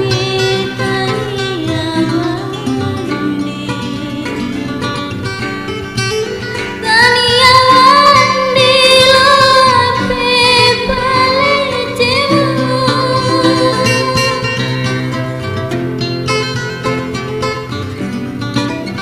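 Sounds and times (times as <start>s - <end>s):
high singing voice: 0.0s - 5.4s, 6.6s - 15.3s
plucked guitar: 0.0s - 19.0s.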